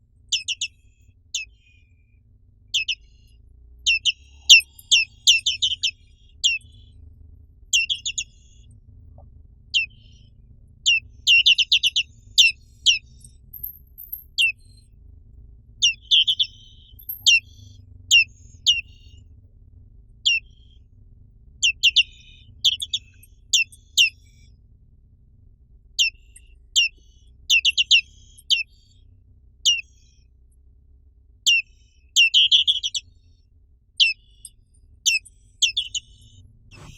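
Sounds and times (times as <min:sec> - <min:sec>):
bird buzzy trills: 0:02.7 - 0:07.0, 0:07.7 - 0:08.7, 0:09.7 - 0:14.8, 0:15.8 - 0:19.3, 0:20.2 - 0:20.8, 0:21.6 - 0:24.5, 0:26.0 - 0:29.0, 0:34.0 - 0:36.9.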